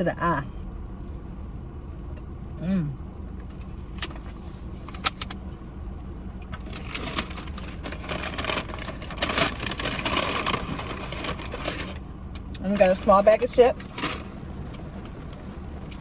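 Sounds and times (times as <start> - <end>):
chip bag crinkling: 6.5 - 12.0.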